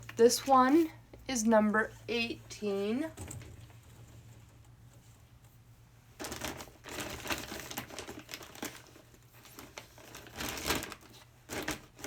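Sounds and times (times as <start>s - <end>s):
plastic bottles crinkling: 6.2s - 12.0s.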